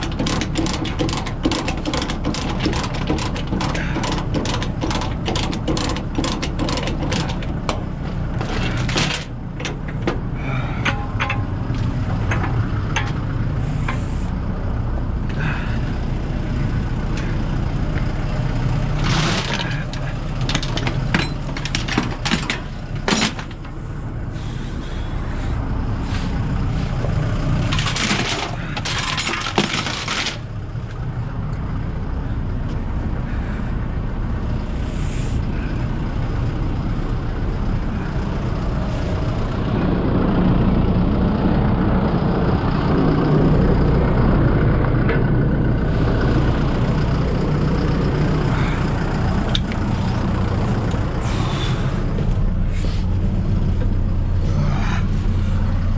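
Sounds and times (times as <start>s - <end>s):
diesel engine running: 0.0s - 55.9s
metallic clinks and clanks: 8.4s - 10.1s, 10.8s - 13.3s, 19.0s - 23.8s, 27.7s - 30.4s.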